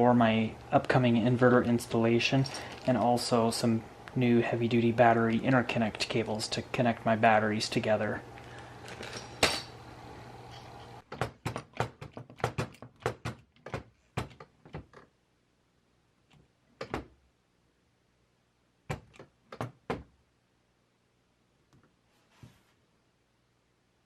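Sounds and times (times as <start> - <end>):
hard objects clicking and knocking: 11.0 - 15.2.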